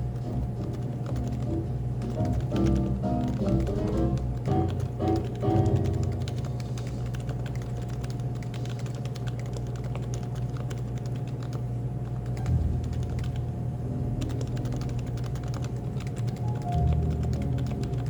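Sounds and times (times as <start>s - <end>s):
keyboard typing clacks: 0.0s - 13.5s, 14.1s - 18.0s
cafe background hum: 0.0s - 18.0s.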